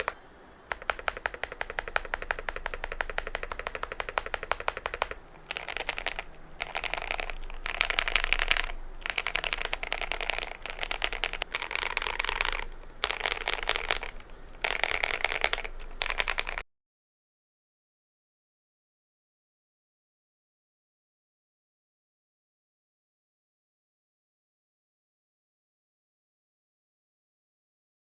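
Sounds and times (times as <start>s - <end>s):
mechanical keyboard typing: 0.0s - 16.6s.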